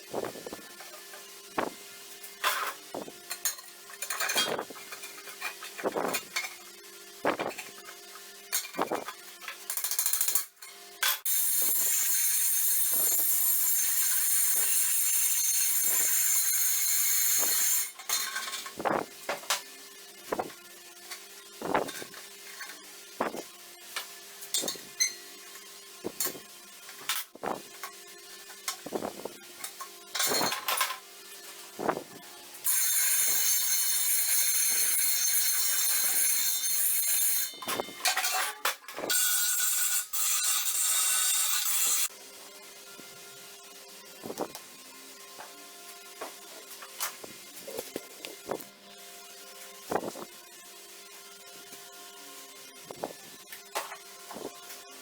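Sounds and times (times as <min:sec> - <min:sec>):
power tool high-pitched hiss: 0:11.3 - 0:18.0.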